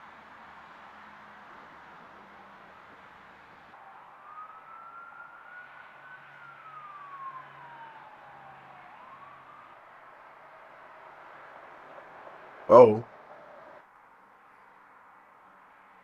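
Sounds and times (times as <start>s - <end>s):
siren wailing: 3.8s - 11.2s.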